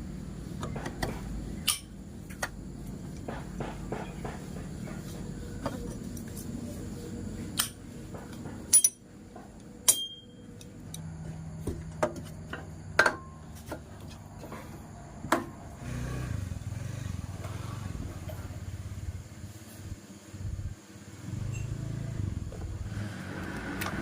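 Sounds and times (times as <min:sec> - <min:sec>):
motor vehicle engine running: 0:00.0 - 0:24.0
metal tools clinking on engine parts: 0:01.6 - 0:02.5, 0:08.7 - 0:09.1, 0:09.8 - 0:11.0.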